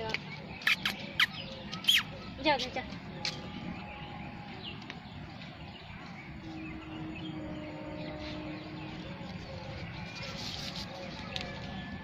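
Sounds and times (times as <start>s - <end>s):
faint bird chirps: 0.1s - 2.8s.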